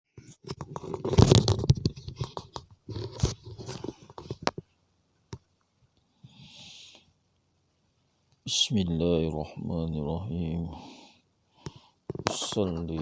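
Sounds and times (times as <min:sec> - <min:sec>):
handling noise rustling and knocking: 0:00.2 - 0:04.7, 0:12.1 - 0:13.0
soft hiss: 0:03.6 - 0:13.0.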